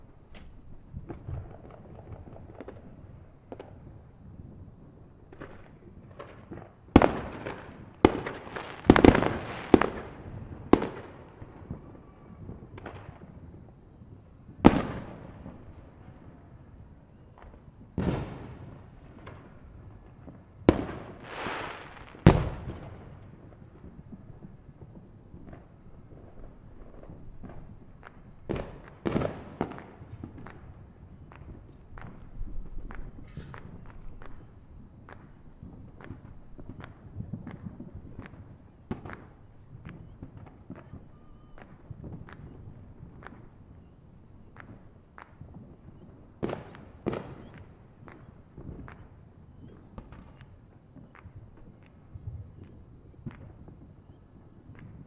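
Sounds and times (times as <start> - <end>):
fireworks banging: 0.0 - 3.9, 26.2 - 43.4.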